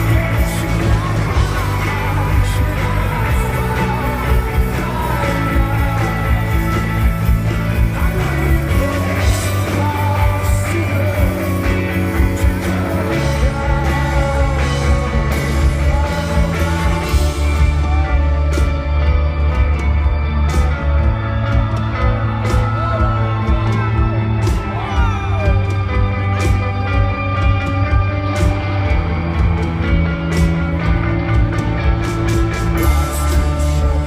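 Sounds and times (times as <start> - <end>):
lead vocal singing: 0.0 - 18.7, 32.7 - 34.0
live rock band playing: 0.0 - 34.0.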